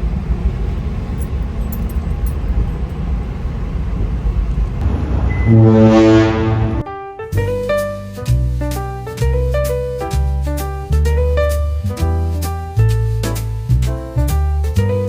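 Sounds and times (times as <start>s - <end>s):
deep ship horn blast: 4.8s - 7.2s
low rumble: 4.8s - 7.5s
piano music: 4.8s - 8.2s.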